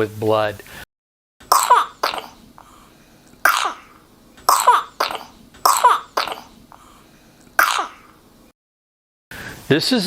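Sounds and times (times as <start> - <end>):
infant wet coughing: 1.5 - 2.8, 3.4 - 6.8, 7.6 - 8.2.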